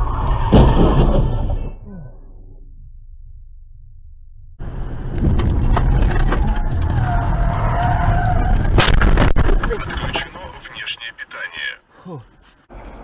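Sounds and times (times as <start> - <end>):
car road and engine noise: 2.9 - 13.0.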